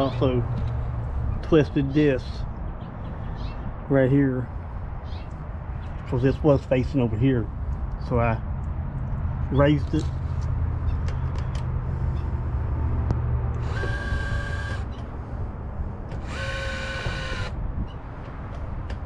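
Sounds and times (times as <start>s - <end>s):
electric motor whining: 13.5s - 14.9s, 16.1s - 17.6s.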